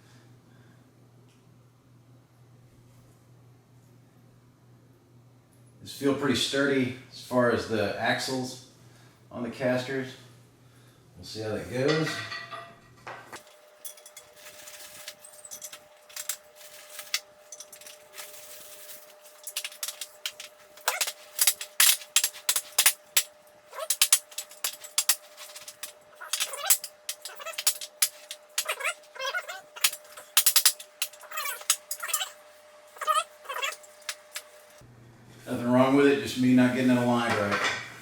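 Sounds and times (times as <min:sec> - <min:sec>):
faint steady hum: 0:00.0 - 0:38.0
chair casters clicking and knocking: 0:13.4 - 0:32.4, 0:33.0 - 0:34.6
caster stems squeaking: 0:13.8 - 0:32.4, 0:33.0 - 0:34.8.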